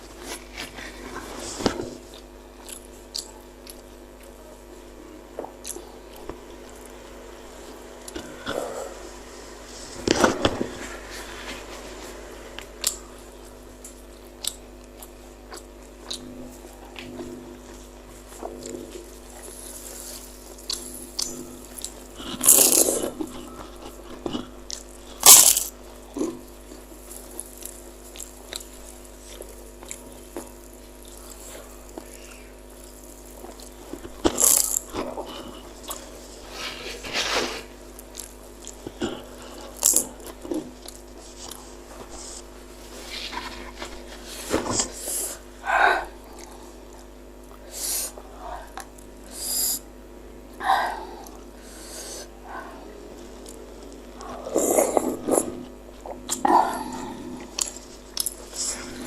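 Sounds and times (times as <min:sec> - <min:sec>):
faint steady hum: 0:00.0 - 0:59.0
close-miked chewing: 0:00.2 - 0:04.4, 0:05.4 - 0:07.0, 0:12.6 - 0:45.0.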